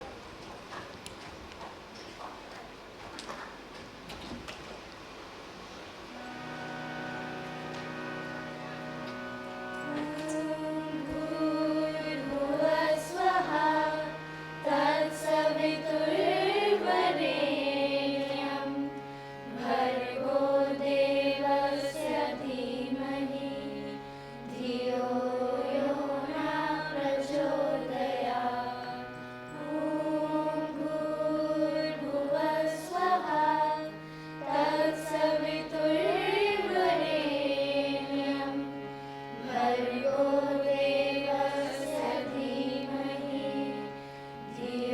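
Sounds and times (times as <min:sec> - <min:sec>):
person singing ornamented melody: 0:09.7 - 0:44.9.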